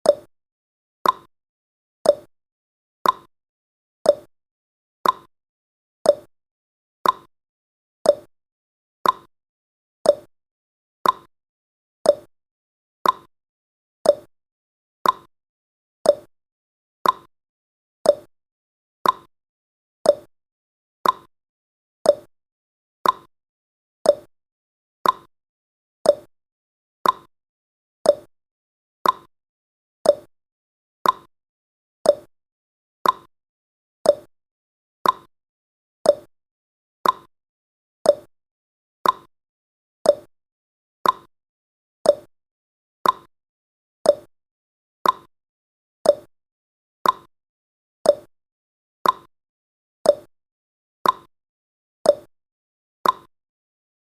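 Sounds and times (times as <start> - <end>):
clock ticking: 29.0 - 29.3, 35.0 - 35.3, 37.0 - 37.3, 39.0 - 39.3, 41.0 - 41.3, 43.0 - 43.3, 45.0 - 45.3, 47.0 - 47.3, 49.0 - 49.3, 53.0 - 53.3.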